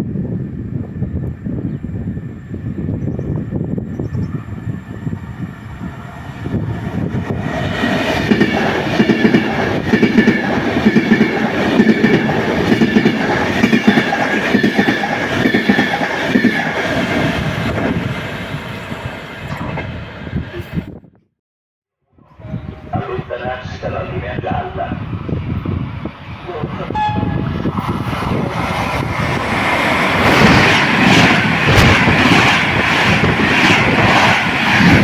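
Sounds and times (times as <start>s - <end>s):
train wheels clattering on rails: 7.1s - 17.4s, 27.7s - 35.0s.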